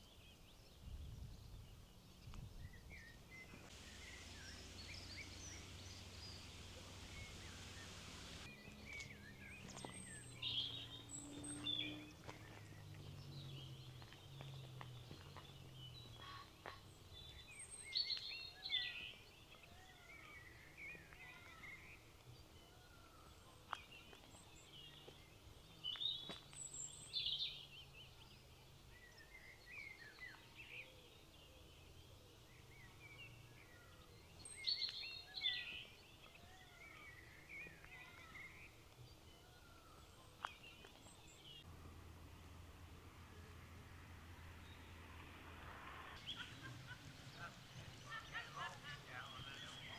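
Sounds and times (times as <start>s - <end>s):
songbirds chirping and trilling: 0.0s - 49.9s
faint low hum: 2.2s - 10.3s.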